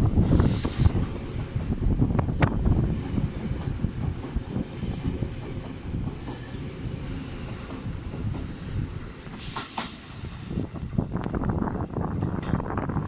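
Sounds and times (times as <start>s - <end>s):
train wheels rumbling: 0.0s - 13.0s
wheel-on-rail squeals: 6.1s - 6.9s.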